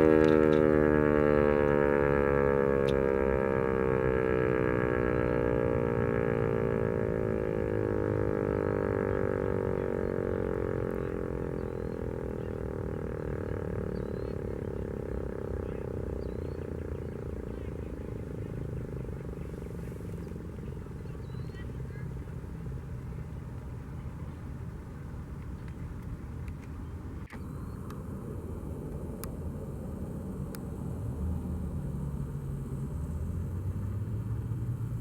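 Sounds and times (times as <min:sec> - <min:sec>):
warning siren winding down: 0:00.0 - 0:19.2.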